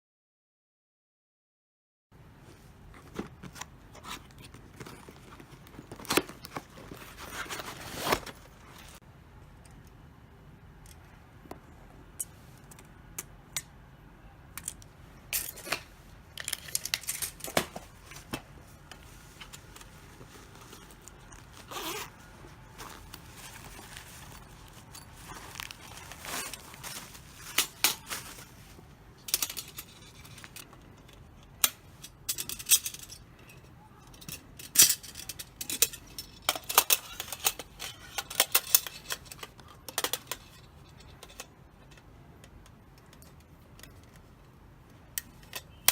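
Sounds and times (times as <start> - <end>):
packaging rustling scrapes: 3.0 - 9.0, 16.4 - 28.9.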